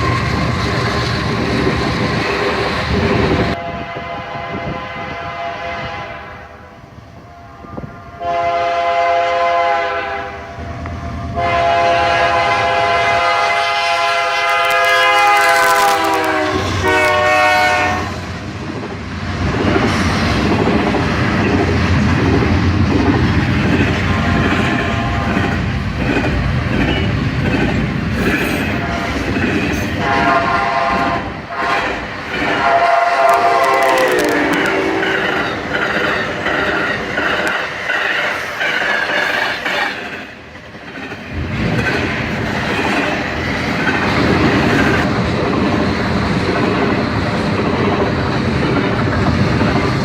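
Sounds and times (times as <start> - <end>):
train rumble: 0.0 - 50.0
locomotive air horn: 3.6 - 6.7, 7.4 - 10.6, 11.3 - 18.2, 30.0 - 35.3.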